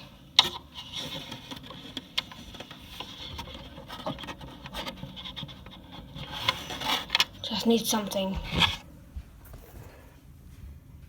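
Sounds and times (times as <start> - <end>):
small clicks and knocks: 0.0 - 8.8
light rubbing: 0.0 - 10.1.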